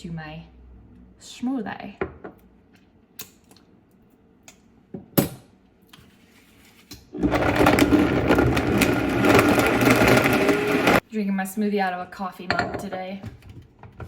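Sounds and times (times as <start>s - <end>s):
blender running: 7.2s - 11.0s.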